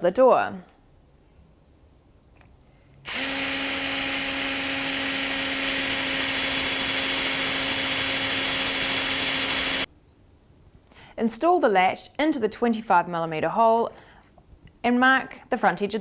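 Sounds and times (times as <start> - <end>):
power drill boring into wood: 3.1 - 9.9.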